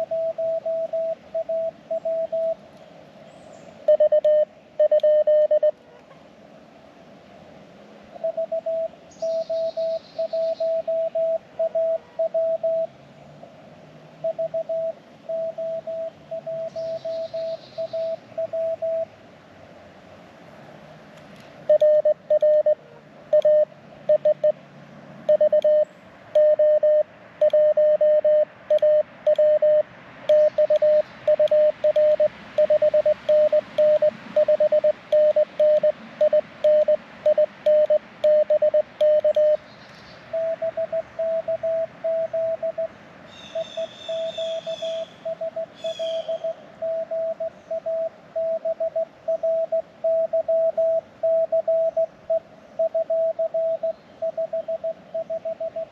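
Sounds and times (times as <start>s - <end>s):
morse code tone: 0.0s - 2.6s, 3.9s - 5.7s, 8.2s - 12.9s, 14.2s - 19.1s, 21.7s - 24.6s, 25.3s - 39.6s, 40.3s - 42.9s, 43.5s - 55.9s
quieter higher morse signal: 0.0s - 2.6s, 8.2s - 12.9s, 14.2s - 19.1s, 25.3s - 25.8s, 26.4s - 39.6s, 40.3s - 42.9s, 43.6s - 55.9s.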